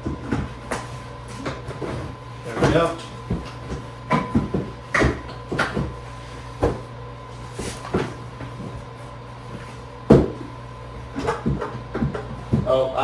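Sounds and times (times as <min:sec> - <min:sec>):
furniture knocks and clicks: 0:00.0 - 0:06.9, 0:09.5 - 0:12.8.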